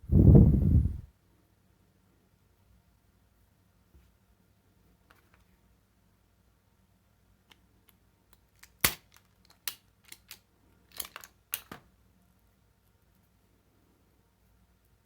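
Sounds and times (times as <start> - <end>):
crimping pliers clicking and snapping: 8.6 - 11.8.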